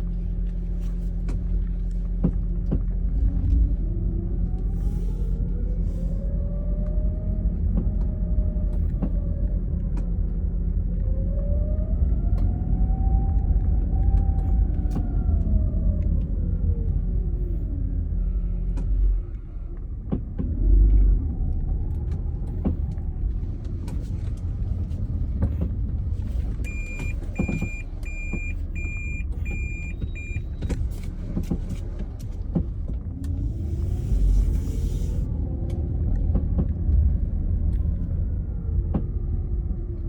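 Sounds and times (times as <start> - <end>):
car low rumble: 0.0 - 40.0
short electronic beeps: 26.7 - 30.6.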